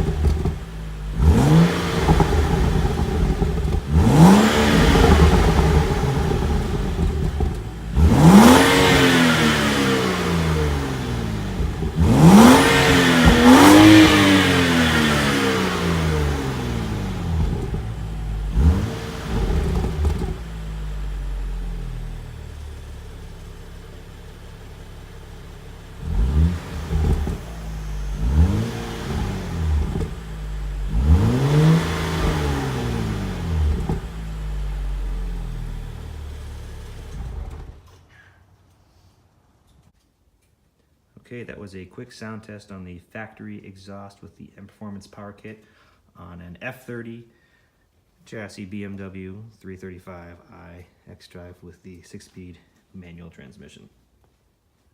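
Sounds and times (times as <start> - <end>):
car engine revving: 0.0 - 38.0.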